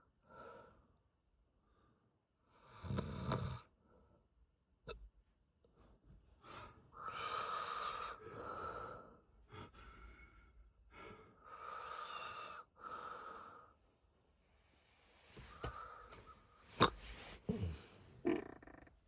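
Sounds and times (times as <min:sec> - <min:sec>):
man breathing heavily in sleep: 0:06.4 - 0:18.2.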